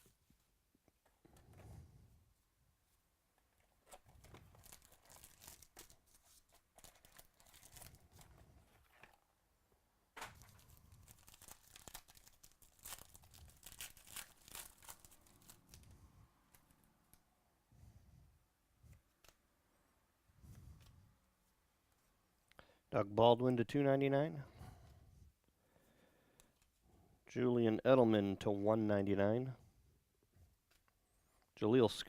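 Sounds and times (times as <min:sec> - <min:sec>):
wrapper tearing and crinkling: 0:03.9 - 0:08.3, 0:10.2 - 0:15.9.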